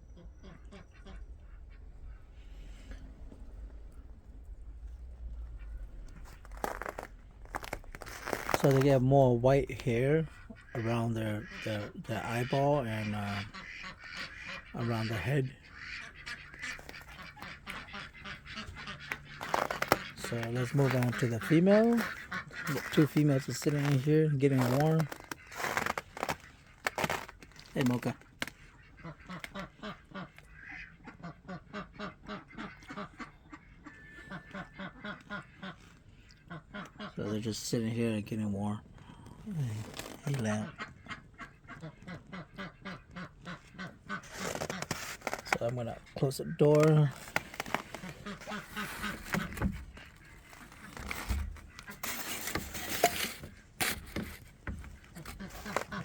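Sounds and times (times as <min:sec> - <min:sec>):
ducks giving soft low calls: 0:00.0 - 0:38.0, 0:38.8 - 0:56.0
scraping and rustling handling: 0:05.9 - 0:15.3, 0:16.0 - 0:28.6, 0:38.9 - 0:40.5, 0:44.1 - 0:56.0.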